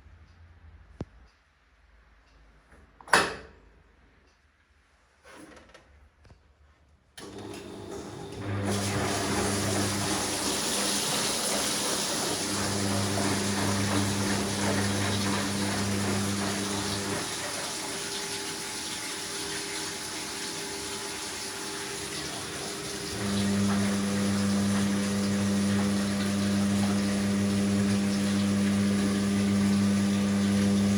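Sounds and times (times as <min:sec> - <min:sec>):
water rushing in washing machine: 0:07.2 - 0:30.9.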